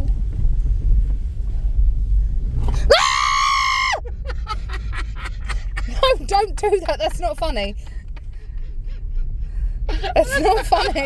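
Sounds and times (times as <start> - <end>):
car moving rumble: 0.0 - 11.0
person screaming: 2.9 - 4.0.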